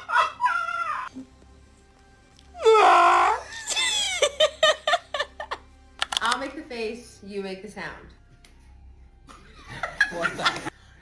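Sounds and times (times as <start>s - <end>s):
background music: 0.0s - 11.0s
person wailing: 2.6s - 4.2s.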